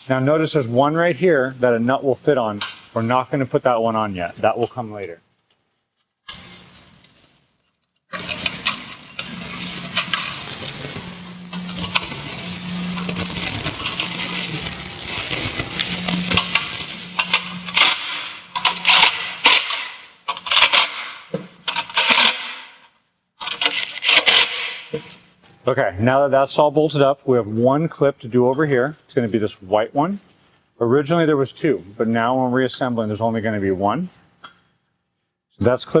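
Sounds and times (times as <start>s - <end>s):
ratchet metallic clatter: 7.7s - 10.4s, 16.3s - 22.7s.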